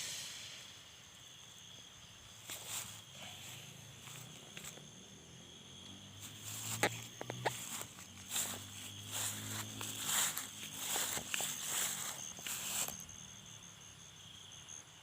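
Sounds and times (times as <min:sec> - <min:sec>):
night insects chirring: 0:00.0 - 0:15.0
footsteps crunching through undergrowth: 0:02.4 - 0:05.0, 0:06.1 - 0:13.1.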